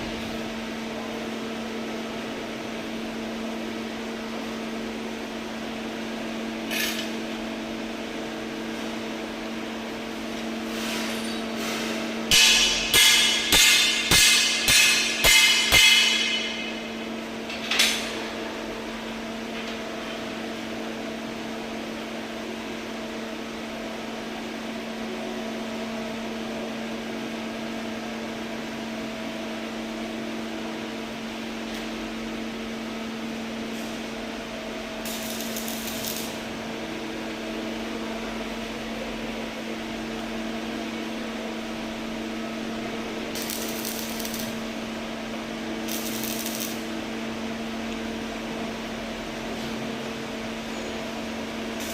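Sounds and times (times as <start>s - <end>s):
steady electrical hum: 0.0s - 51.9s
hammer striking metal: 12.3s - 16.8s.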